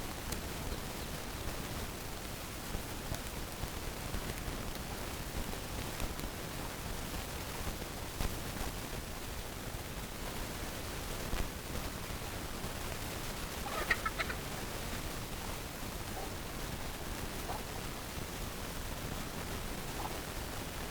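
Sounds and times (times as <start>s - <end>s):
background hiss: 0.0s - 20.9s
chicken clucking: 13.6s - 16.4s.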